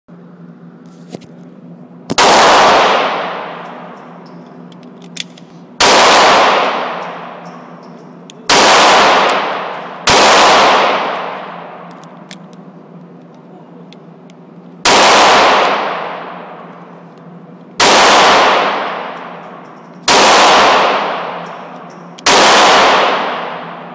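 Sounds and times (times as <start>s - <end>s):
low hum: 0.1s - 23.9s
pistol shots echoing: 2.1s - 12.2s, 14.8s - 17.0s, 17.8s - 23.9s.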